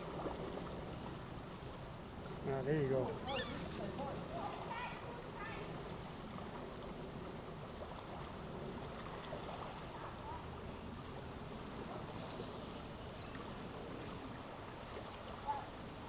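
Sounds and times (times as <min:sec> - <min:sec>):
outdoor background noise: 0:00.0 - 0:16.0.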